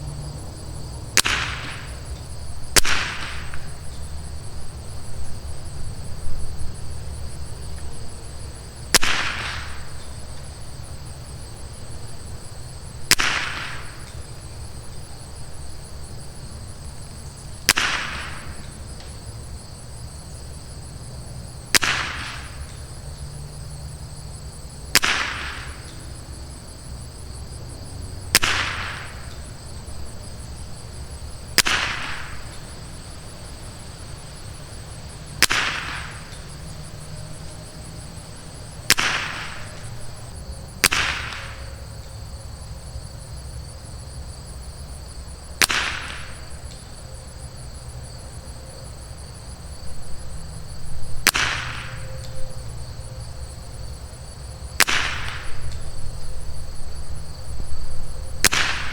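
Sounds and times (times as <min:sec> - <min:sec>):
insects droning: 0:00.0 - 0:58.9
rifle shots with echo: 0:01.1 - 0:02.1, 0:02.7 - 0:03.8, 0:08.9 - 0:10.3, 0:13.0 - 0:14.3, 0:17.6 - 0:18.7, 0:21.7 - 0:22.8, 0:24.9 - 0:26.0, 0:28.3 - 0:29.5, 0:31.4 - 0:33.8, 0:34.6 - 0:36.7, 0:38.8 - 0:40.0, 0:40.8 - 0:41.8, 0:45.6 - 0:46.8, 0:51.2 - 0:52.3, 0:54.8 - 0:56.0, 0:58.4 - 0:58.9.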